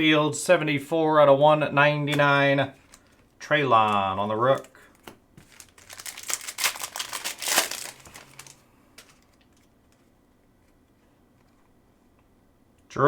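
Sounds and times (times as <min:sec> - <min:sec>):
plastic wrapper crinkling: 0:02.8 - 0:10.1.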